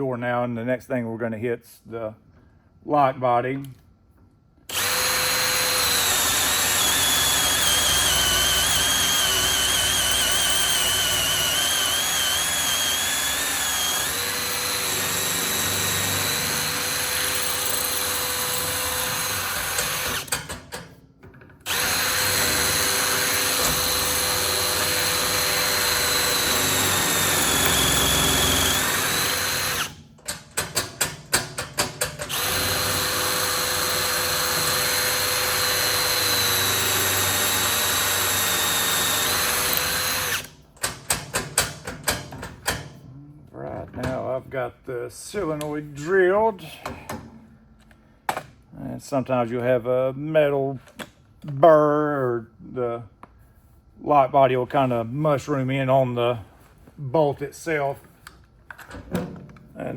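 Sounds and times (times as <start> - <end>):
drill boring through metal: 4.7 - 20.5, 21.7 - 30.0, 32.2 - 40.6.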